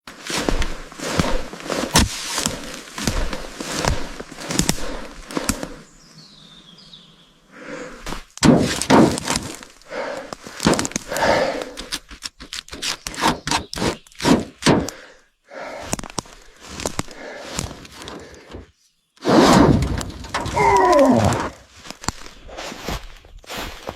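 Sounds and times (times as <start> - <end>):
irregular knocks and thuds: 0.1 - 5.8, 8.0 - 9.8, 10.4 - 11.2, 11.9 - 15.1.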